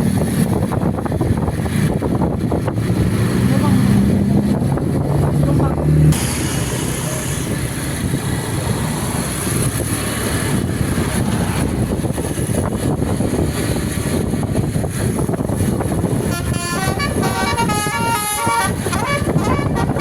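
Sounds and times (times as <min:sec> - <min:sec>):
heavy vehicle engine rumbling: 0:00.0 - 0:20.0.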